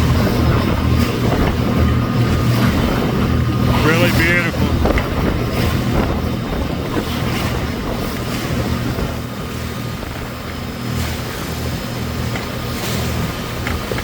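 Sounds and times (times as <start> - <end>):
boat motor humming: 0.0 - 14.0
moving water: 0.0 - 14.0
wind on microphone: 0.0 - 14.0.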